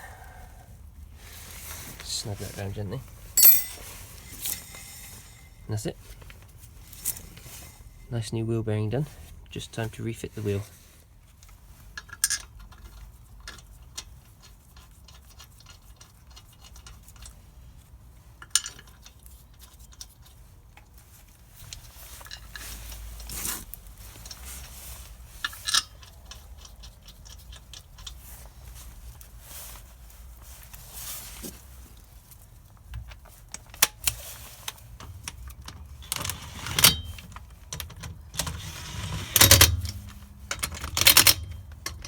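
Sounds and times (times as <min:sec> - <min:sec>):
metallic clinks of tools: 0:03.4 - 0:05.5.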